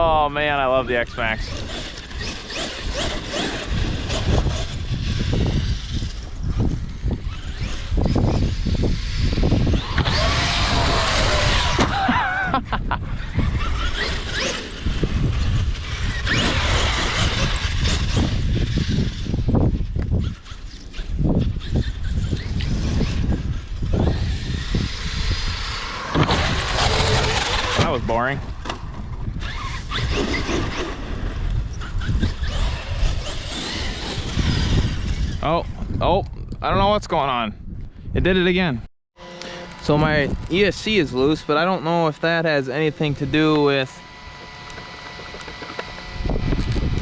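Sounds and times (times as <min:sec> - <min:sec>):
wind on microphone: 0:00.0 - 0:38.9, 0:39.8 - 0:47.0
electric motor whining: 0:00.5 - 0:36.5, 0:39.2 - 0:47.0
faint electric motor whine: 0:39.2 - 0:47.0.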